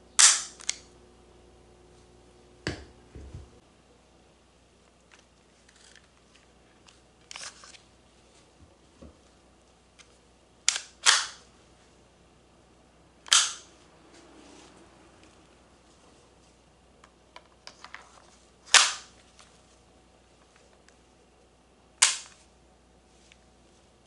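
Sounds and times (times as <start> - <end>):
airsoft pistol firing: 0.2 - 0.6, 10.7 - 11.4, 13.3 - 13.7, 18.7 - 19.1, 22.0 - 22.3.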